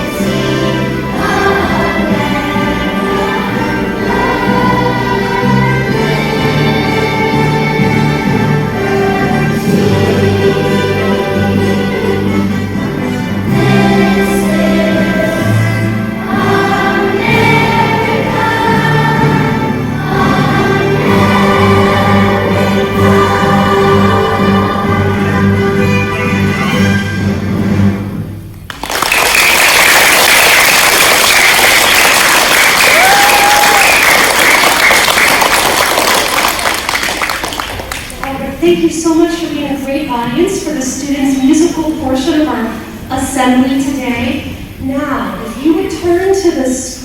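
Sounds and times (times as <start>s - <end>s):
children's choir singing: 0.0s - 27.0s, 30.0s - 47.0s
instrumental accompaniment: 0.0s - 28.7s
audience applauding: 28.7s - 38.6s.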